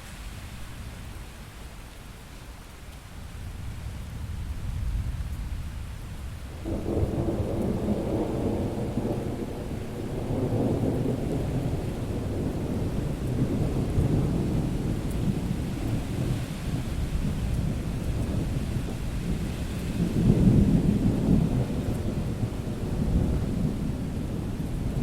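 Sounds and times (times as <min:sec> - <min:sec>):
steady rain: 0:00.0 - 0:25.0
thunder rumbling: 0:03.6 - 0:25.0.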